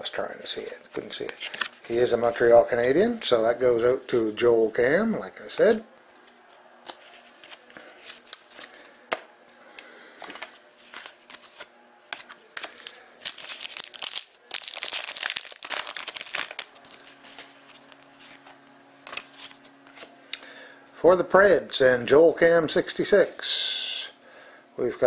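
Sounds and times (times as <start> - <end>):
cards being handled: 0.9 - 2.0, 5.6 - 9.3, 10.2 - 20.1
wrapper crinkling and tearing: 10.8 - 19.6.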